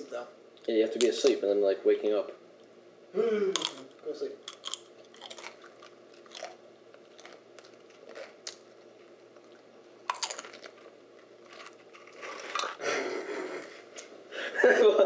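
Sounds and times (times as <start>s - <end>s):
person chewing crunchy food: 3.6s - 12.8s.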